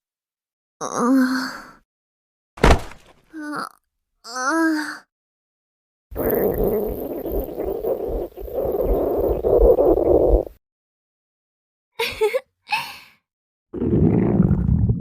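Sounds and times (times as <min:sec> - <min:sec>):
stomach growling: 0:06.2 - 0:10.6, 0:13.8 - 0:15.0.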